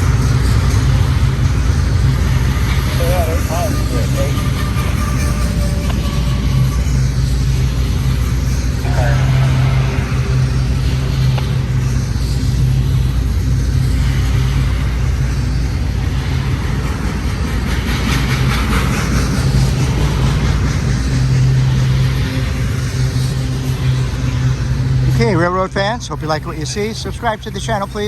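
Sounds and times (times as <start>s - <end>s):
freight train rumbling past: 0.0s - 28.0s.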